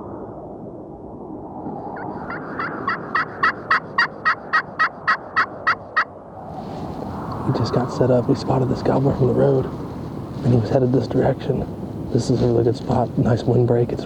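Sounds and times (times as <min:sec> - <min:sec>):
wind noise: 0:00.0 - 0:14.0
wild turkey yelping: 0:02.3 - 0:06.1.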